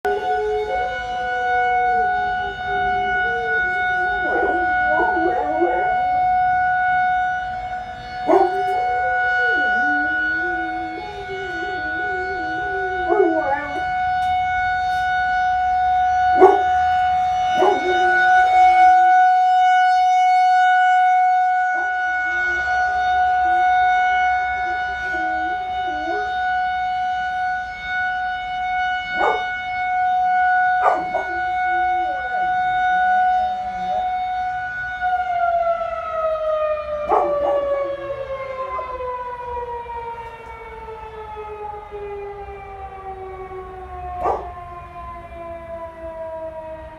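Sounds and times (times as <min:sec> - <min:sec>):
warning siren winding down: 0:00.0 - 0:46.9
dog howling: 0:00.1 - 0:06.2, 0:08.2 - 0:14.1, 0:16.4 - 0:18.5, 0:24.4 - 0:26.6, 0:29.1 - 0:29.5, 0:30.7 - 0:32.4, 0:33.0 - 0:34.2, 0:37.0 - 0:39.2, 0:44.1 - 0:44.6.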